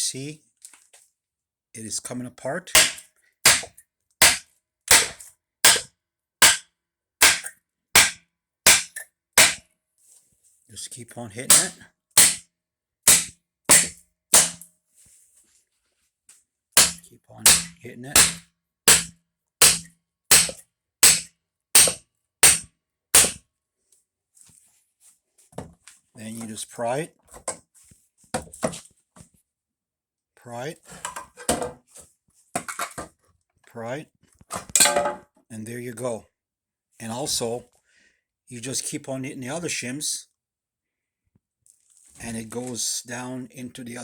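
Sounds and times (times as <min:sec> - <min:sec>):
hammer striking shims in wood: 0:02.8 - 0:09.6, 0:11.5 - 0:12.4, 0:13.1 - 0:14.6, 0:16.8 - 0:23.4.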